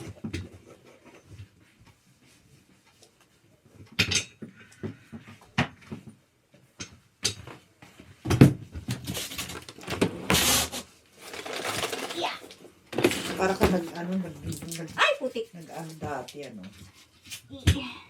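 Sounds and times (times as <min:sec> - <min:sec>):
rustling: 0:09.0 - 0:17.6.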